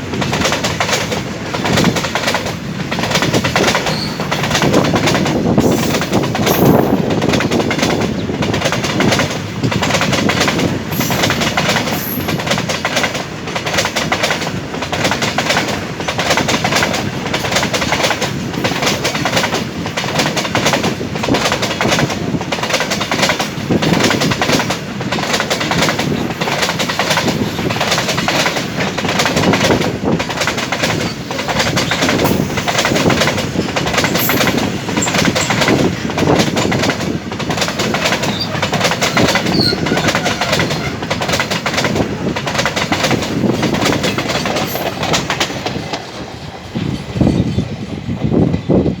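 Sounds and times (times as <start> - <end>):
train wheels clattering over rail joints: 0.0 - 49.0.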